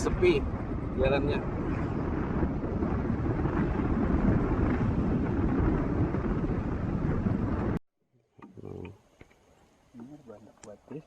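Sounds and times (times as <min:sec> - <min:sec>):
road and wind noise: 0:00.0 - 0:07.8
vehicle engine: 0:00.0 - 0:07.8.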